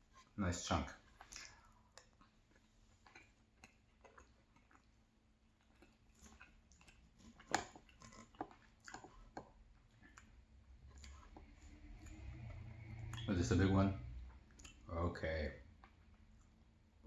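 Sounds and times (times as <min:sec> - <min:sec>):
soft chewing: 0:00.0 - 0:17.0.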